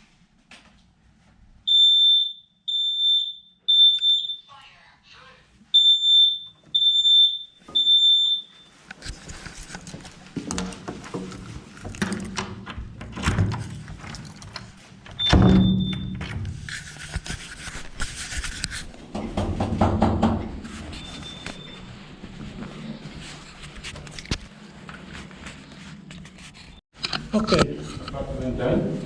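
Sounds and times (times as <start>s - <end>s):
smoke detector beeping: 1.7s - 4.5s, 5.8s - 8.8s, 15.2s - 16.2s
handling knocks and clatter: 9.0s - 17.4s.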